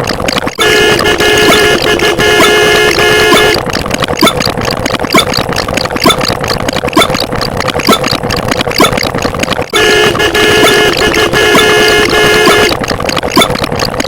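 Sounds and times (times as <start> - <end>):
rhythmic sharp clicks: 0.0 - 14.0
loud car horn honk: 0.6 - 3.6, 9.8 - 12.8.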